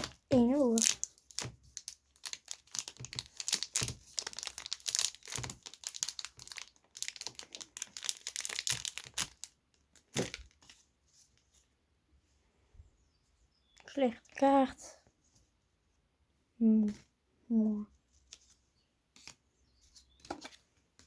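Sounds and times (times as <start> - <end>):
card pack wrapper crinkling: 0.0 - 10.8.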